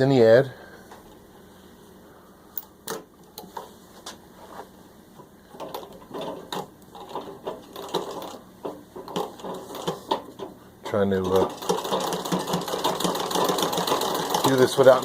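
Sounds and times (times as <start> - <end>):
treadle sewing machine clattering: 5.5 - 15.0.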